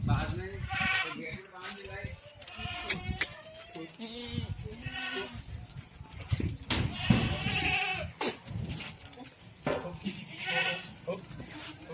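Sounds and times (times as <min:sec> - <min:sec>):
goat bleating: 0:00.6 - 0:01.3, 0:02.4 - 0:05.5, 0:06.9 - 0:08.3, 0:10.0 - 0:11.9.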